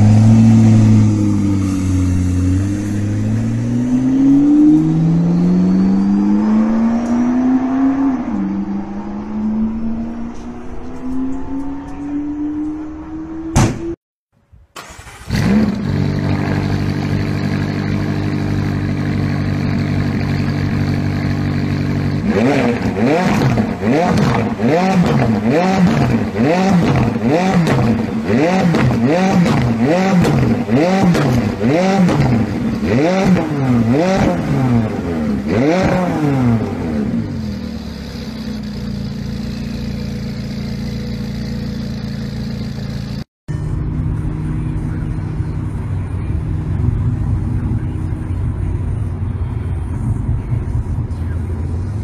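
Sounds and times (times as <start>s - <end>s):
car engine revving: 0.0s - 14.0s, 14.8s - 52.0s.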